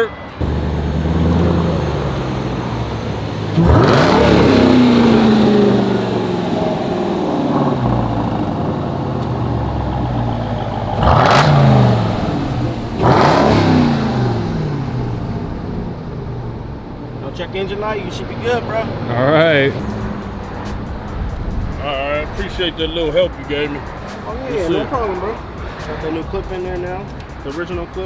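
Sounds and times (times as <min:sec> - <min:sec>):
car engine idling and revving: 0:00.0 - 0:28.0.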